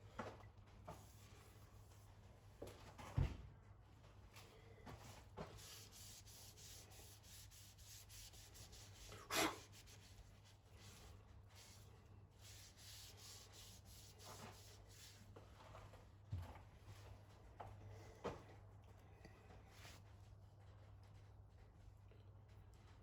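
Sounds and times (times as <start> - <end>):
faint rubbing on wood: 5.4 - 15.8.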